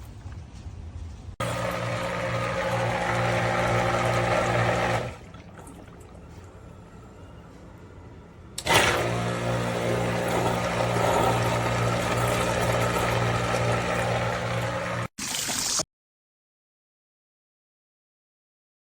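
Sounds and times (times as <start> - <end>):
pump motor humming: 1.4 - 6.9, 8.6 - 15.8.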